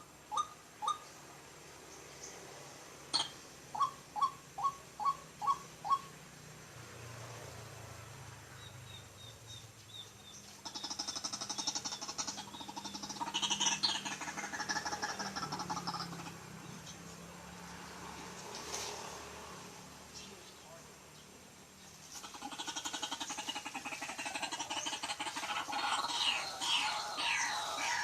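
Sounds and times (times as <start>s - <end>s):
waterhen calling: 0.0s - 1.1s, 3.1s - 6.2s, 10.5s - 16.9s, 22.1s - 28.0s.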